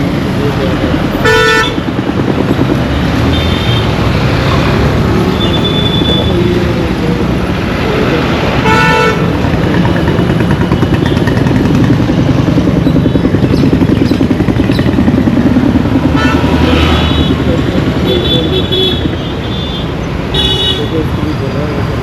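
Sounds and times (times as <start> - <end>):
engine putter: 0.0 - 7.4, 9.2 - 19.3
road traffic rumble: 0.0 - 22.0
vehicle horn honk: 1.2 - 1.8, 8.6 - 9.2, 16.2 - 17.4.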